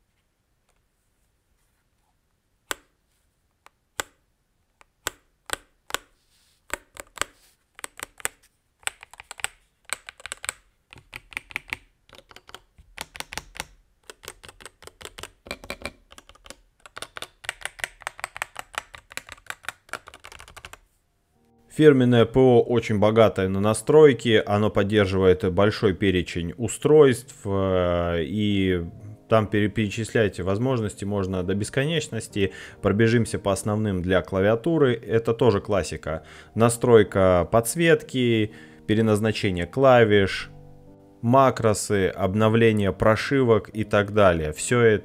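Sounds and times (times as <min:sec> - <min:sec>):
mechanical keyboard typing: 0:06.7 - 0:20.8.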